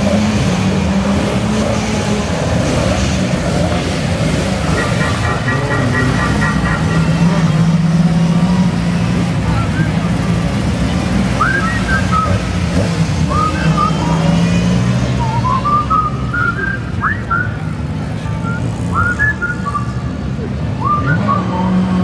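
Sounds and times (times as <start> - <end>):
race car engines droning: 0.0 - 22.0
rising high whistles: 9.4 - 20.2, 20.8 - 22.0.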